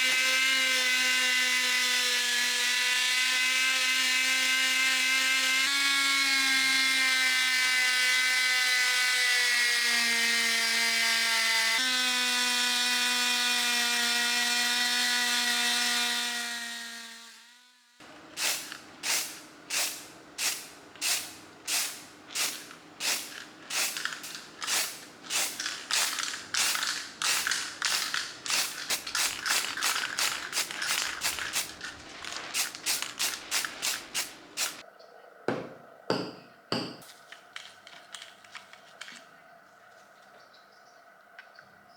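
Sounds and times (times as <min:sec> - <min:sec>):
power tool whining: 0:00.0 - 0:18.0.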